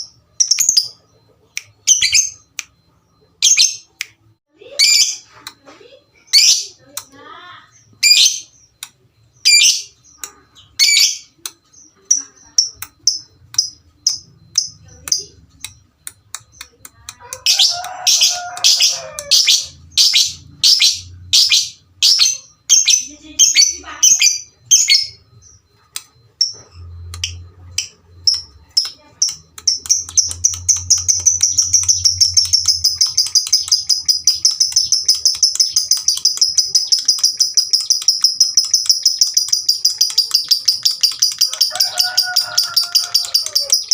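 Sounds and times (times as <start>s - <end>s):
lovebirds chirping: 0.0s - 43.9s
rapid high bird chatter: 27.8s - 43.9s.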